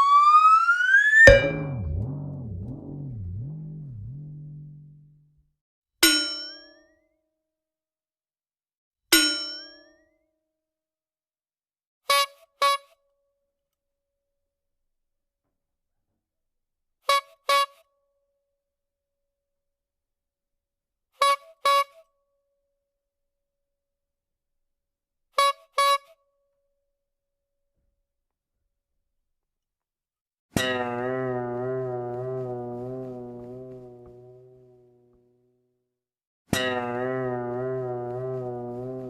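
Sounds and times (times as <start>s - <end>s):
comic two-note sound effect: 0.0s - 5.3s, 30.7s - 34.6s, 36.6s - 39.0s.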